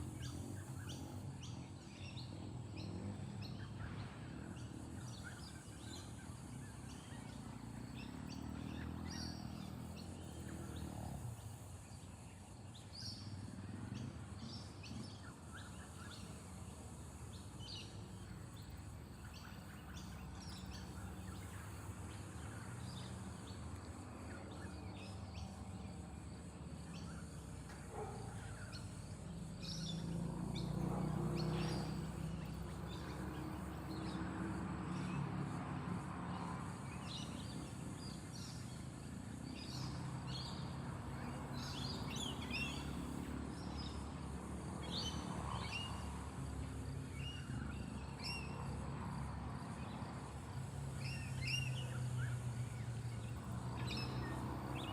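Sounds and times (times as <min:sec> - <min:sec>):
birds chirping: 0:00.0 - 0:34.2.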